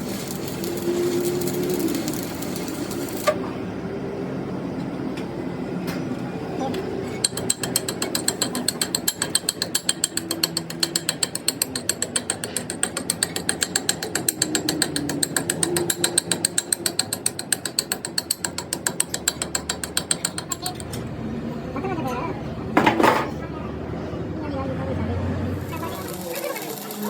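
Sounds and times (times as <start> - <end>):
rapid metallic machine clicking: 0.0 - 3.4, 7.2 - 20.9, 25.7 - 27.0.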